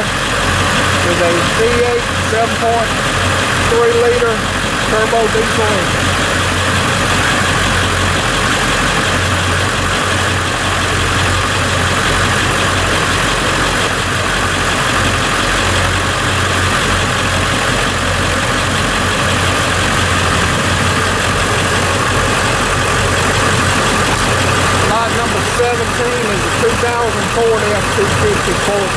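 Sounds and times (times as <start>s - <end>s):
diesel engine idling: 0.0s - 28.9s.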